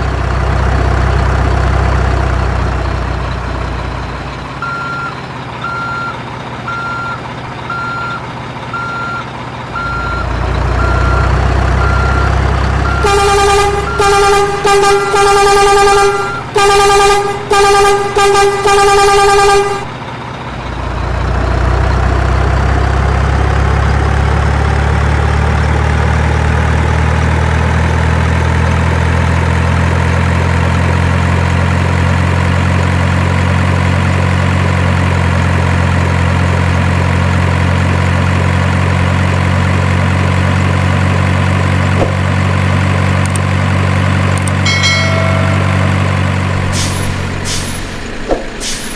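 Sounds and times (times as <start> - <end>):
truck engine idling: 0.0 - 48.9.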